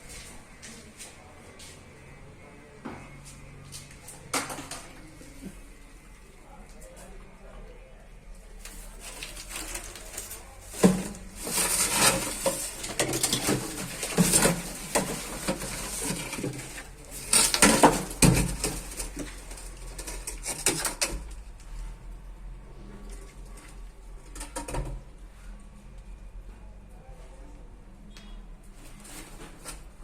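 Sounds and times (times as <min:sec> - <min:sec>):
hard objects clattering and scraping: 0:08.6 - 0:25.1.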